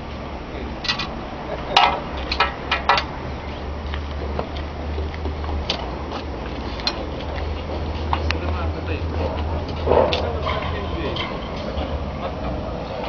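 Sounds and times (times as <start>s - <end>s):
sharp clinks and knocks: 0.8s - 3.2s.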